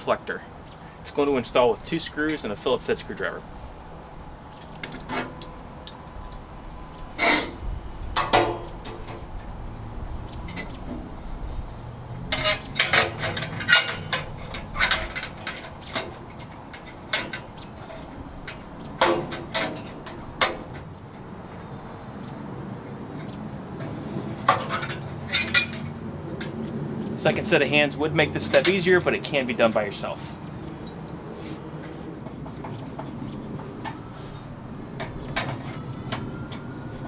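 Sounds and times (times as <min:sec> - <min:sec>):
metal parts clinking and knocking: 0:12.3 - 0:20.8, 0:24.3 - 0:26.6, 0:30.7 - 0:31.2.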